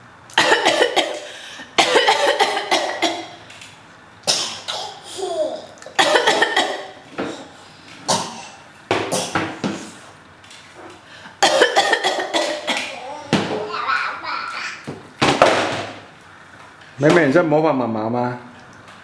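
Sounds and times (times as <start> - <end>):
toddler pretend coughing: 0.4 - 3.4, 4.3 - 9.5, 11.4 - 14.9
toddler falling vocal sound: 12.7 - 14.9.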